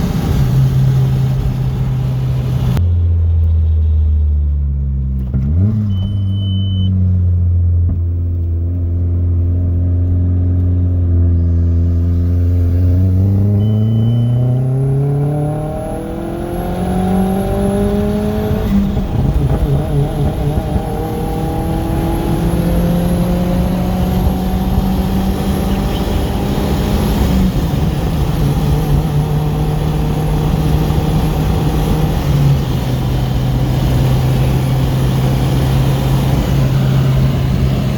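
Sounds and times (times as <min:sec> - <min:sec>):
turbocharged car engine revving: 0:05.2 - 0:07.6, 0:08.3 - 0:37.9.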